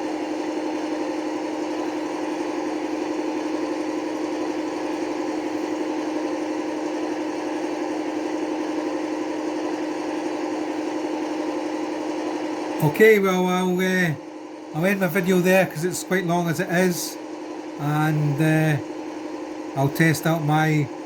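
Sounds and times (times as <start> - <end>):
diesel engine idling through small speaker: 10.0 - 21.0.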